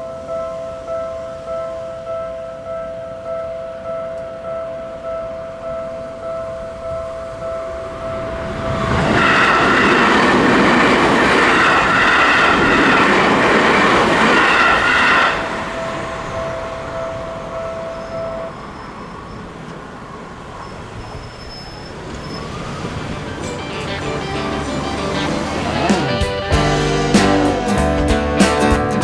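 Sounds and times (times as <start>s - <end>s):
crossing warning bell ringing: 0.0s - 27.8s
electric train passing: 0.0s - 28.1s
high whine over rail noise: 0.0s - 29.0s.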